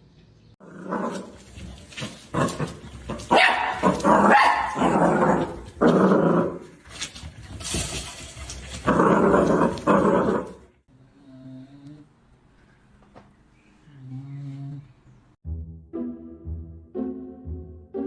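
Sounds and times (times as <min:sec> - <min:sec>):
dog barking and growling: 0:00.6 - 0:06.8, 0:08.7 - 0:10.7.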